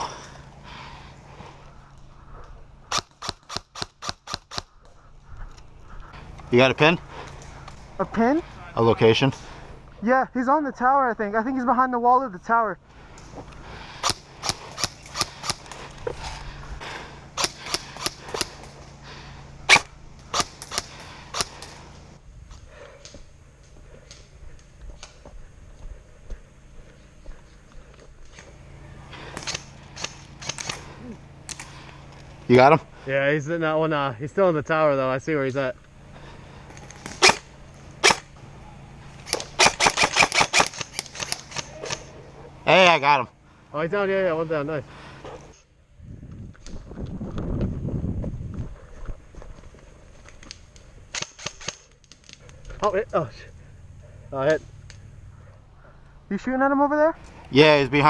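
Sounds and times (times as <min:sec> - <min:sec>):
airsoft gun shots: 0:02.9 - 0:04.7, 0:14.0 - 0:15.7, 0:17.4 - 0:18.6, 0:19.7 - 0:21.6, 0:37.0 - 0:38.3, 0:39.2 - 0:42.1.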